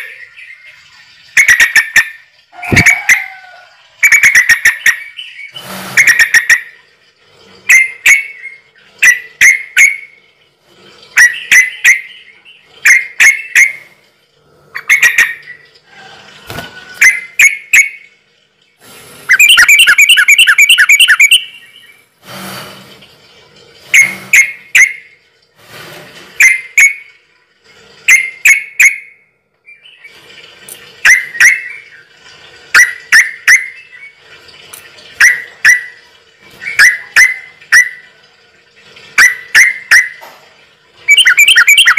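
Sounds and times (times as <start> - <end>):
bird rapid trill: 19.3 - 21.7, 41.1 - 41.9
bird chirps: 19.3 - 22.0, 41.1 - 41.9.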